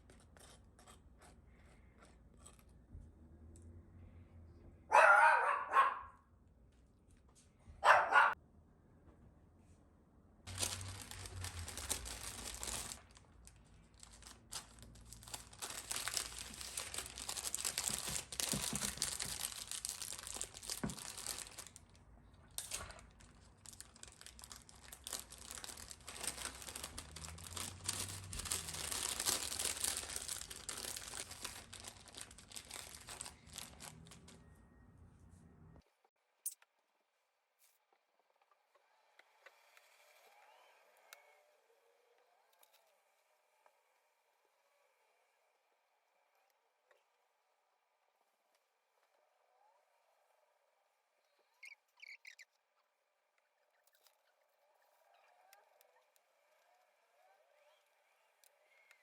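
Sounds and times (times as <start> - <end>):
dog barking: 4.9 - 6.2, 7.8 - 8.4
paper crinkling and rustling: 10.5 - 34.5.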